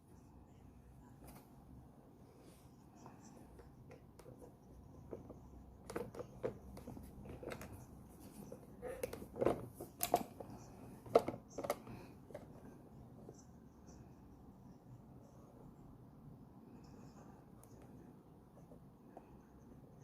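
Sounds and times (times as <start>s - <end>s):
coffee maker parts clicking: 9.0s - 11.9s.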